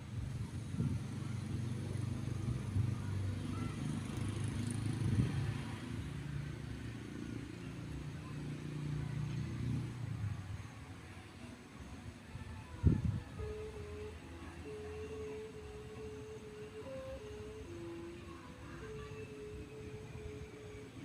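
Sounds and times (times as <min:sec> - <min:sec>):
strong wind buffeting microphone: 0:00.0 - 0:03.3, 0:12.7 - 0:13.6
faint low drone: 0:07.7 - 0:21.0.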